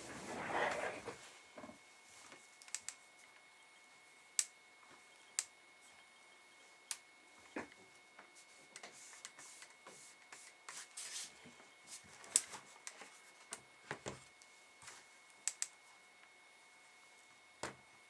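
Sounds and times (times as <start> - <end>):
faint high whine: 0.0 - 9.0.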